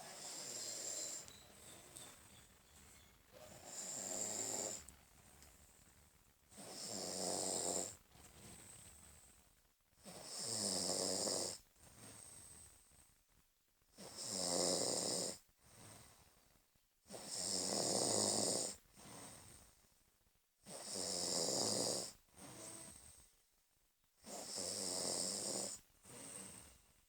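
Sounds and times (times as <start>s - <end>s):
person snoring: 0.0s - 1.8s
soft breathing: 0.0s - 6.2s.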